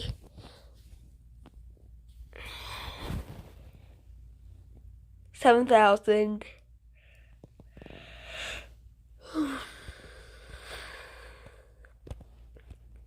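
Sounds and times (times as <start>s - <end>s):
person exhaling heavily: 7.8s - 11.7s.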